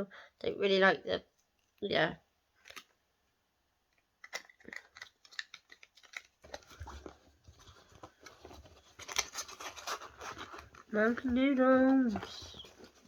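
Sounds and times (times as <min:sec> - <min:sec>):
fidget toys clicking and rustling: 0:04.2 - 0:07.1.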